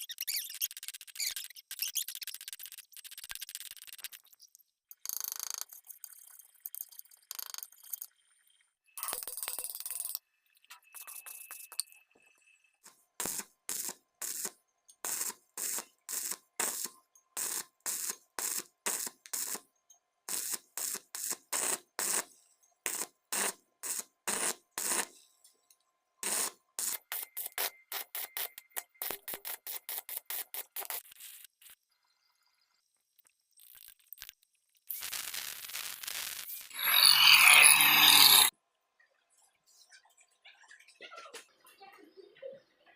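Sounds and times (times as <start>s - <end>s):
welding arc crackling: 13.2s - 19.6s, 20.3s - 22.3s, 22.9s - 25.1s, 26.2s - 31.8s, 33.6s - 38.5s.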